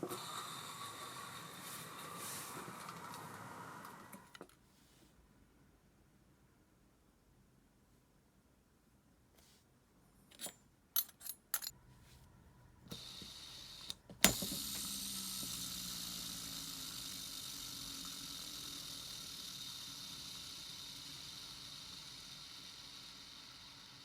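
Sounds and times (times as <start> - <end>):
spool spinning whir: 12.9 - 24.0.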